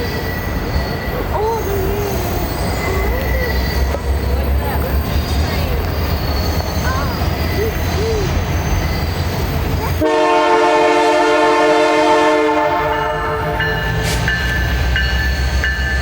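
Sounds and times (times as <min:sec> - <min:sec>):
wheel squeals: 0:00.0 - 0:10.0
train rumbling: 0:00.0 - 0:16.0
locomotive air horn blast: 0:10.0 - 0:14.4.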